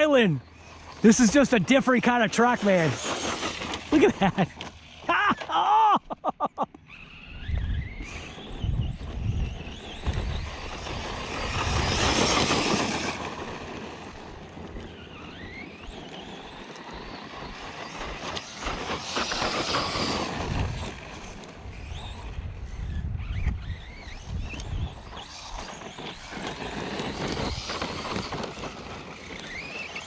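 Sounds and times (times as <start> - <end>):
electric rc truck motor whining: 0.0 - 5.5, 6.7 - 30.0.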